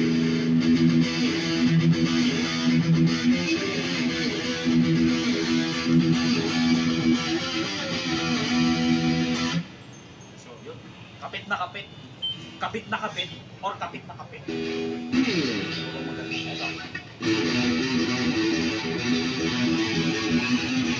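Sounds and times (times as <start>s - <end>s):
electric guitar chords: 0.0s - 9.7s, 14.5s - 20.9s.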